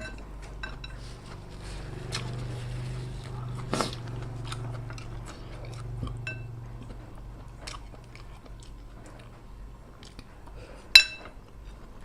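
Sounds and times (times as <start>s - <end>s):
steady low hum: 0.0s - 12.0s
chewing noodles: 0.7s - 10.6s
light ringing clink: 11.0s - 11.3s.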